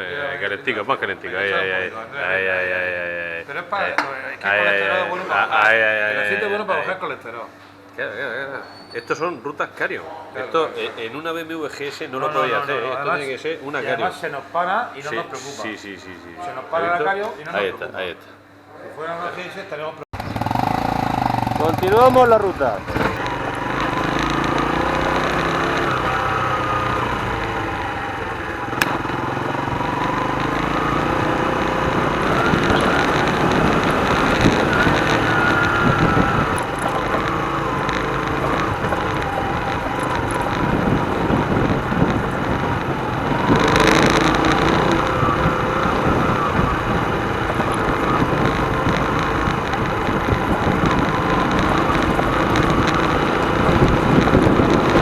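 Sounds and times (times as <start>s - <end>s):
motorcycle engine revving: 20.2s - 55.0s.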